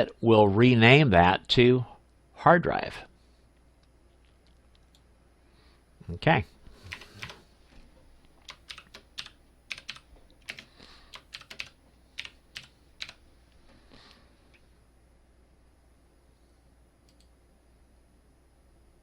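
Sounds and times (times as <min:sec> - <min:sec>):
computer keyboard typing: 0:06.8 - 0:07.4, 0:08.4 - 0:13.2.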